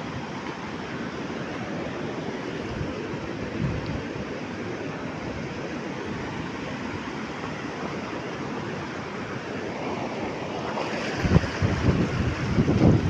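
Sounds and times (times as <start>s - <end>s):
sea waves surging: 0.0s - 13.0s
wind buffeting microphone: 10.8s - 13.0s
wind rushing: 10.8s - 13.0s.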